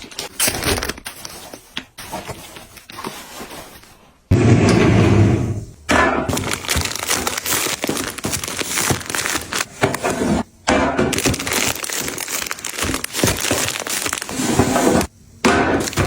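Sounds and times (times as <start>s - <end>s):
packaging crinkling and rustling: 0.0s - 4.0s, 6.3s - 10.4s, 11.1s - 15.1s, 15.8s - 16.0s.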